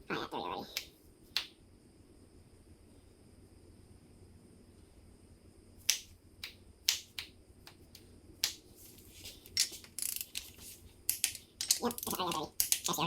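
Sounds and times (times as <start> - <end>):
torque wrench clicking: 9.6 - 13.0.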